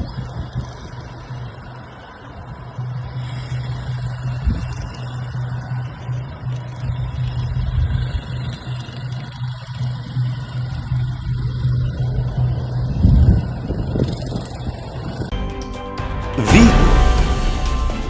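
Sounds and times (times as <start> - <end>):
engine pulsing hum: 0.0 - 15.3
background music: 15.3 - 18.0.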